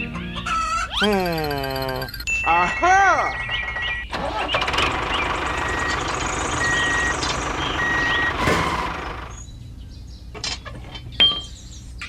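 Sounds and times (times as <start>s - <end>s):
truck reversing alarm beeping: 0.9s - 9.4s
engine running: 4.1s - 9.4s.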